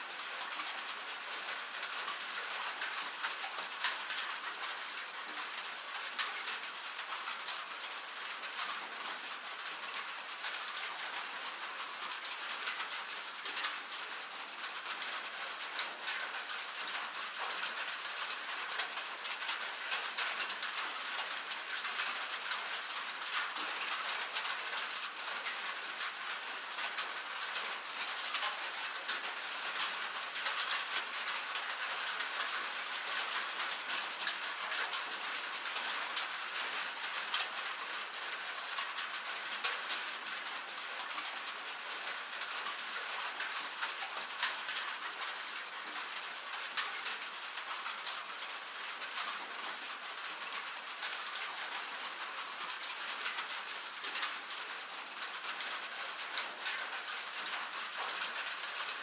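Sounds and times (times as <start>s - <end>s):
rain on a metal roof: 0.0s - 59.0s.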